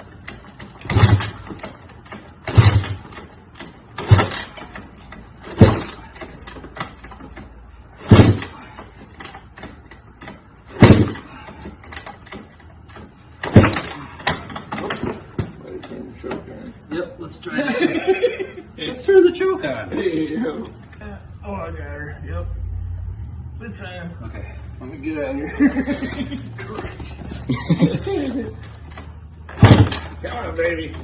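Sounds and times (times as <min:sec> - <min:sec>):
motorcycle engine kick-start turning over: 0:00.0 - 0:15.6, 0:28.6 - 0:30.7.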